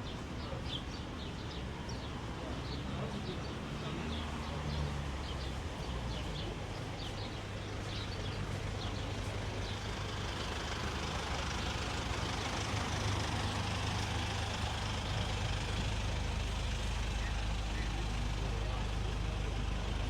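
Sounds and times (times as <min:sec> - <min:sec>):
outdoor street noise: 0:00.0 - 0:20.0
vehicle engine rumbling: 0:05.8 - 0:20.0.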